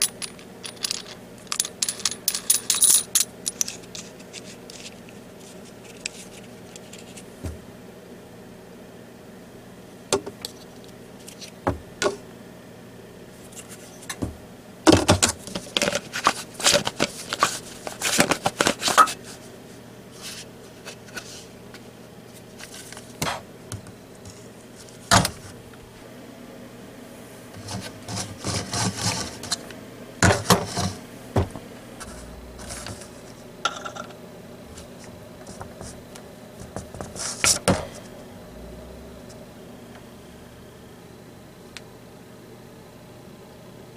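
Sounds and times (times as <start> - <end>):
clicks knocks and rattling of tools: 0.0 - 4.9
faint steady hum: 0.0 - 43.9.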